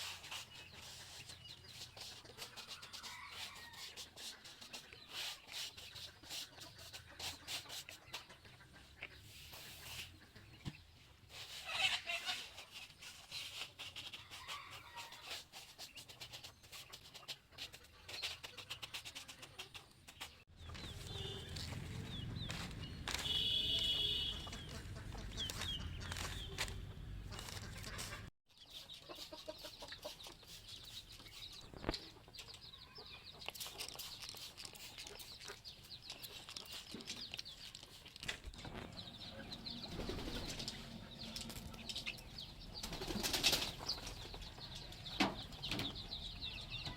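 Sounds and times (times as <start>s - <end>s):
chicks peeping: 0.0s - 46.9s
clicks and rustles: 33.4s - 39.0s.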